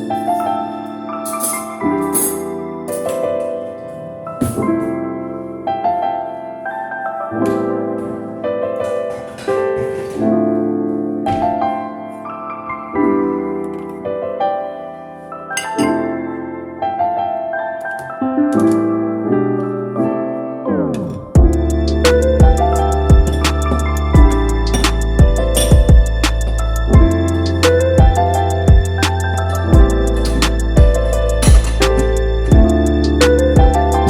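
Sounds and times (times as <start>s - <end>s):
soft piano piece: 0.0s - 34.0s.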